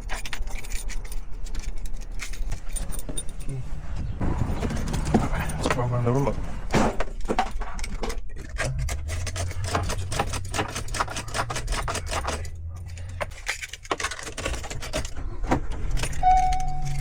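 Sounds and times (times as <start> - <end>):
rapid irregular clicking and tapping: 7.0 - 17.0.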